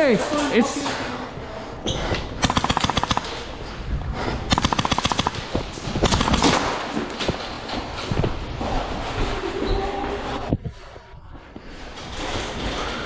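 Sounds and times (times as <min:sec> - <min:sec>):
airsoft guns firing automatic bursts: 0:02.4 - 0:03.5, 0:04.5 - 0:07.5.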